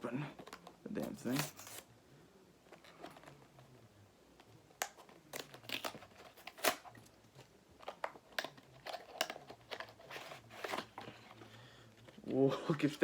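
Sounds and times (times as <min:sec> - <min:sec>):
packaging crinkling and tearing: 0:00.4 - 0:01.9, 0:05.0 - 0:07.1.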